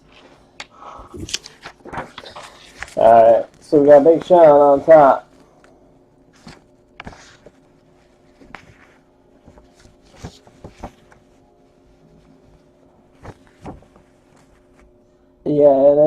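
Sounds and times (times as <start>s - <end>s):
faint steady hum: 0.0s - 16.0s
cards sliding and tapping: 0.6s - 3.0s, 6.3s - 11.3s.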